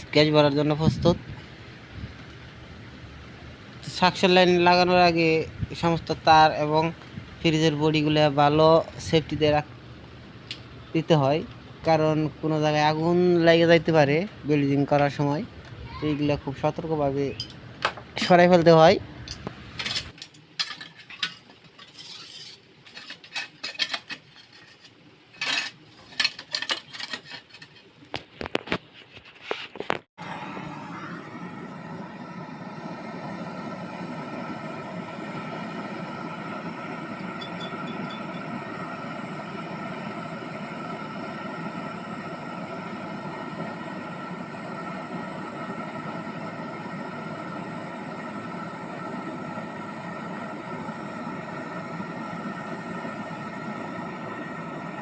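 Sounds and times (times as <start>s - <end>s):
tools and pipe clinking: 19.3s - 27.9s
brazing torch flame hissing: 30.1s - 55.0s.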